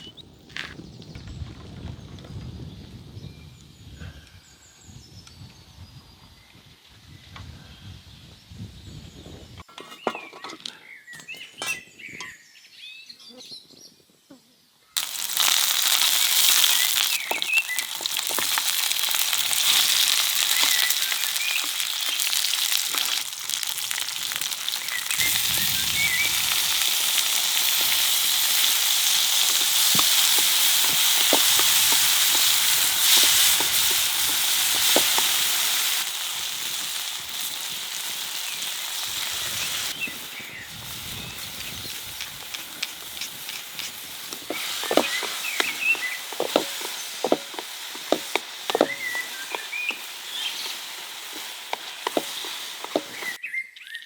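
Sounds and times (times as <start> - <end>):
birds chirping faintly: 0.0 - 54.0
food frying in oil: 15.0 - 53.4.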